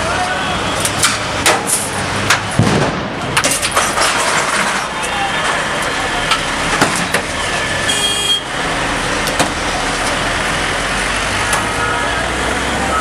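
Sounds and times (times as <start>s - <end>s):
dense street noise: 0.0s - 13.0s
high horn-like tone: 7.9s - 8.5s.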